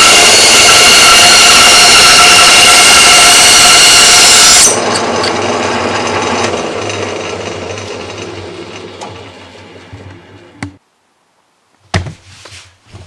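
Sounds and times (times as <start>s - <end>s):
bandsaw winding down: 0.0s - 9.4s
bandsaw whining: 0.0s - 9.8s.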